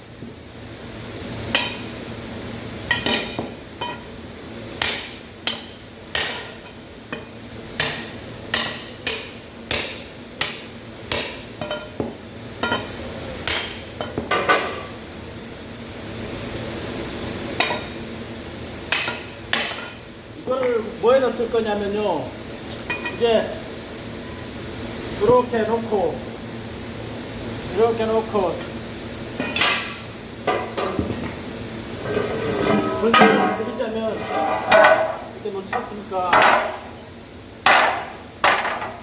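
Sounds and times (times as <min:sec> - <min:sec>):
hammer striking steel: 0:32.8 - 0:33.9.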